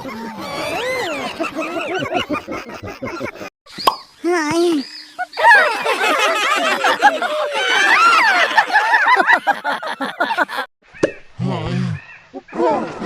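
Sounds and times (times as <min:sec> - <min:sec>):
sliding chirping cartoon voices: 0:03.8 - 0:08.5.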